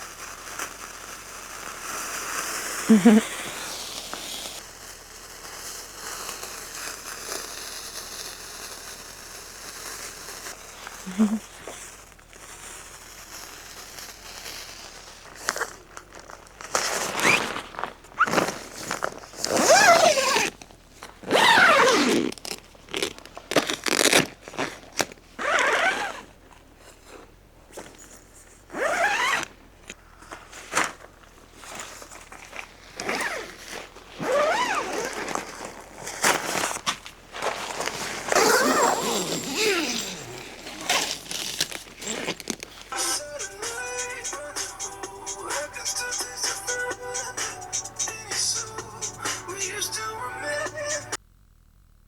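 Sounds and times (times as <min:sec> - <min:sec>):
sparklers fizzing and crackling: 0:00.0 - 0:17.4, 0:37.4 - 0:51.2.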